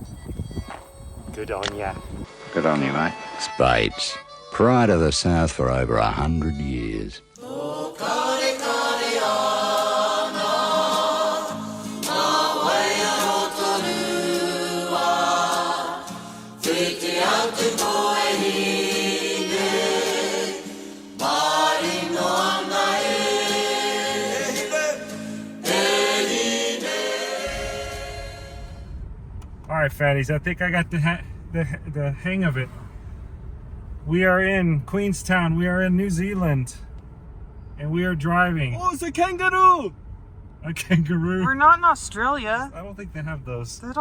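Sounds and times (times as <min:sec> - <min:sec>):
choral singing music: 0:07.3 - 0:29.2.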